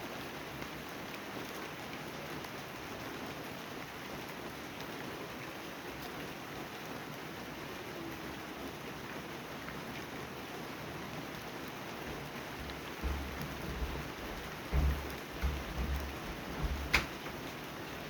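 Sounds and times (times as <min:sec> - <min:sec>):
steady rain falling: 0:00.0 - 0:18.0
low rumbling thumps: 0:12.0 - 0:17.4.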